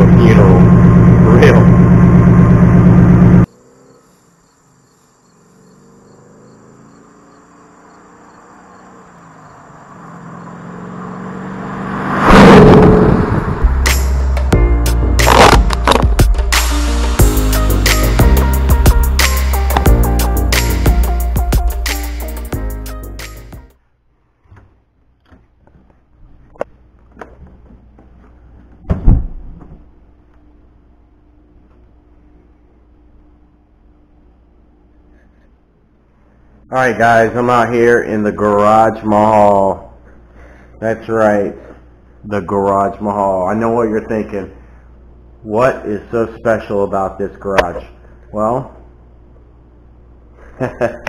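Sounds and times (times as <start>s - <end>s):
car engine passing by: 2.8s - 14.5s
loud double thump: 28.8s - 29.8s.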